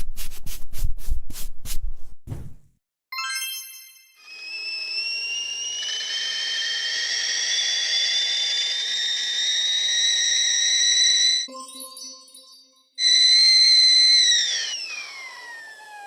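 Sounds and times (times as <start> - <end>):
kettle whistling: 4.2 - 11.5, 13.0 - 16.0.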